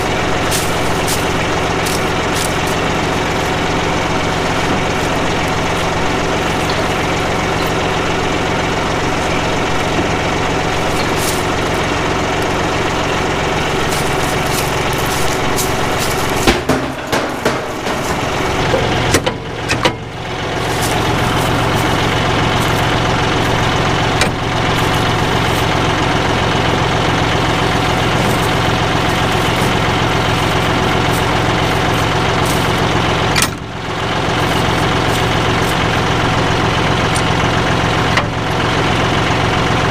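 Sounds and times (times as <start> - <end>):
tractor diesel engine running: 0.0 - 39.9
machine clunks: 15.0 - 23.2, 32.0 - 33.8.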